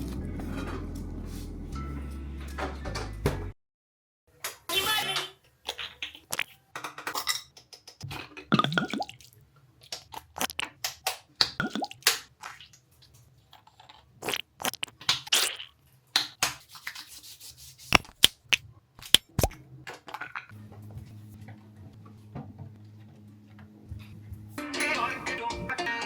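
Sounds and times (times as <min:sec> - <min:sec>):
small objects clicking and squishing: 0:06.2 - 0:06.5, 0:09.9 - 0:11.2, 0:13.8 - 0:16.4, 0:17.9 - 0:19.5.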